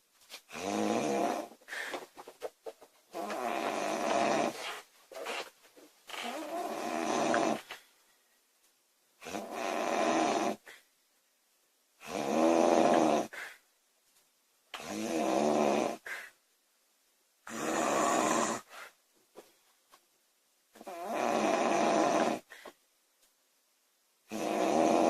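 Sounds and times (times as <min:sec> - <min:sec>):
woman snoring loudly: 0:00.6 - 0:01.5, 0:03.2 - 0:04.6, 0:06.2 - 0:07.6, 0:09.2 - 0:10.6, 0:12.0 - 0:13.3, 0:14.8 - 0:16.0, 0:17.5 - 0:18.7, 0:20.8 - 0:22.5, 0:24.3 - 0:25.0.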